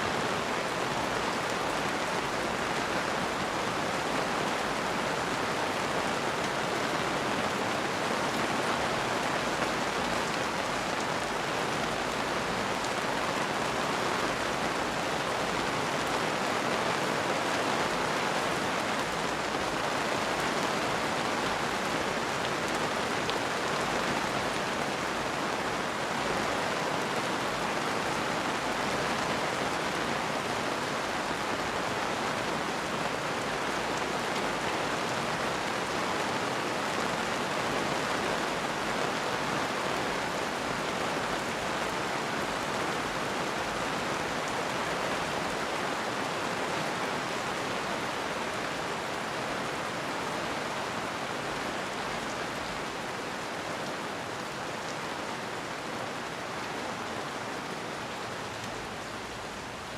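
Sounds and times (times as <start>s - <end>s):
steady rain hiss: 0.0s - 59.9s.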